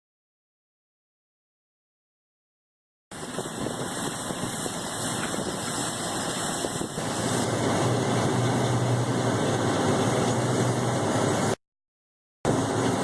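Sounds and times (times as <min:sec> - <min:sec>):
combine harvester running: 0:03.1 - 0:11.6, 0:12.5 - 0:13.0
low mechanical hum: 0:03.2 - 0:11.6, 0:12.5 - 0:13.0.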